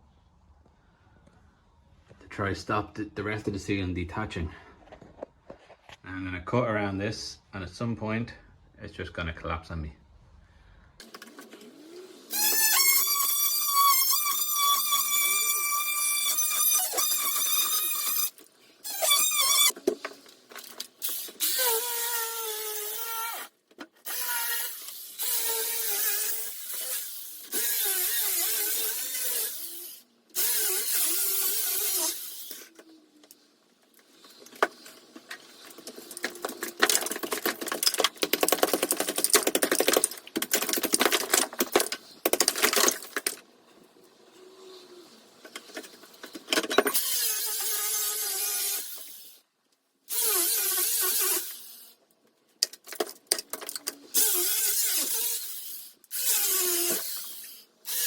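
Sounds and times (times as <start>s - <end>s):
power saw cutting plaster: 54.1s - 58.0s.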